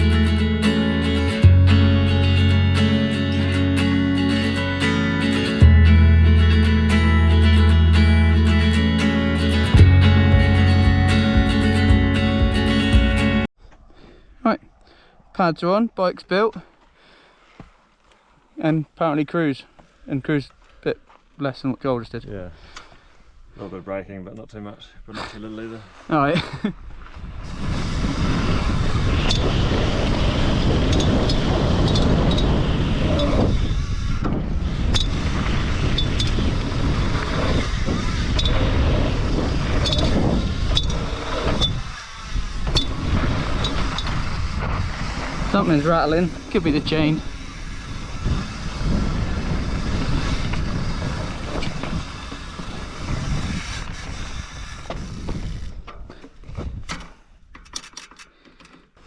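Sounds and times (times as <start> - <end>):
wind on microphone: 0.0 - 2.8, 26.8 - 56.9
bike tyres rumbling over ground: 27.1 - 56.9
bike clicks and rattles: 29.2 - 33.3, 34.0 - 45.3, 46.7 - 59.0.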